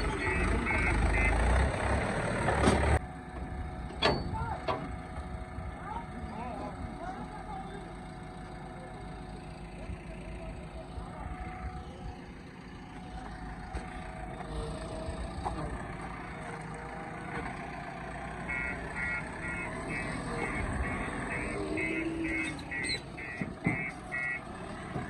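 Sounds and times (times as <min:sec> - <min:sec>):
diesel engine running: 0:00.0 - 0:25.0
reversing alarm beeping: 0:18.4 - 0:24.5.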